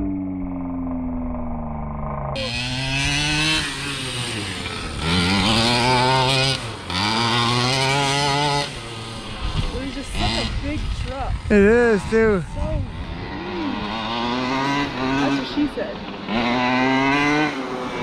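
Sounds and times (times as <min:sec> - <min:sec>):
two-stroke engine revving: 0:00.0 - 0:18.0.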